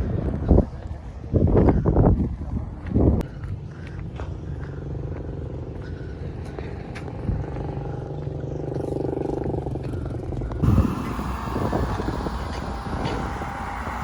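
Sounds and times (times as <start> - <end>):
vehicle engine running: 0.0 - 14.0
hiss: 10.6 - 14.0.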